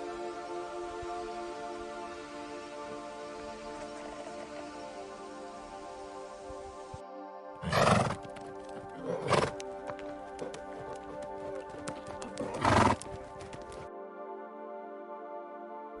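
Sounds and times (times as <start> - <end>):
soft background music: 0.0 - 16.0
hooves clip-clopping: 7.6 - 13.9
horse calls: 8.9 - 13.9.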